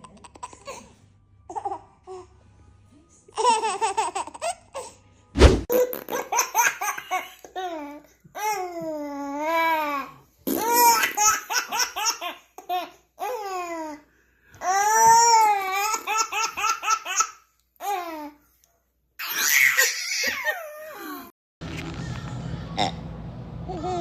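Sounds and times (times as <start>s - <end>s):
baby squealing cries: 19.2s - 21.3s.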